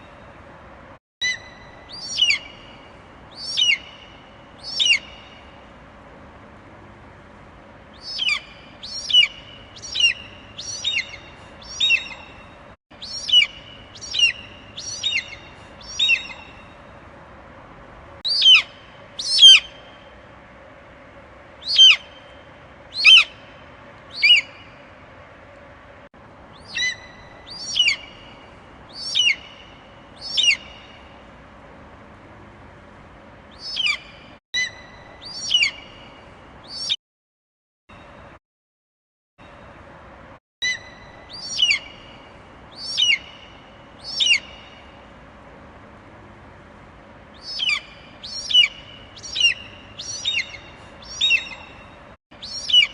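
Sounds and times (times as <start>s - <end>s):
faint steady hum: 0.0s - 36.9s, 39.4s - 52.9s
eagle calling: 1.2s - 5.3s, 8.0s - 12.4s, 13.0s - 16.6s, 18.3s - 19.8s, 21.6s - 22.3s, 22.9s - 23.4s, 24.1s - 24.8s, 26.6s - 28.4s, 29.0s - 30.9s, 33.6s - 35.9s, 40.6s - 44.8s, 47.4s - 52.9s.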